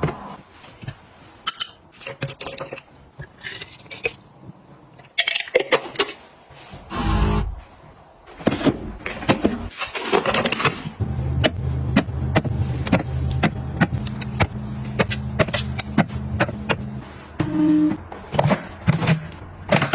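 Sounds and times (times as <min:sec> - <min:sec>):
low mechanical hum: 0:06.9 - 0:07.8.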